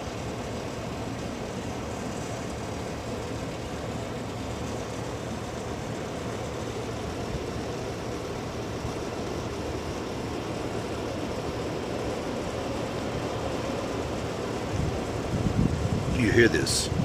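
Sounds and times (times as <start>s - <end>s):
storm wind roaring: 14.7s - 17.0s.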